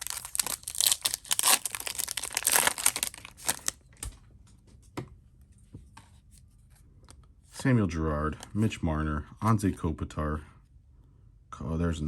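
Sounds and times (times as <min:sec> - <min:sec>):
card pack wrapper crinkling: 0:00.0 - 0:03.8.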